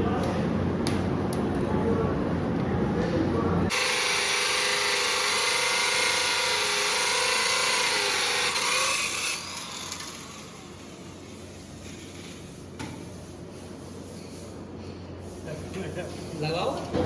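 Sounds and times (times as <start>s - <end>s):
electric hand drill whining: 3.7s - 10.8s.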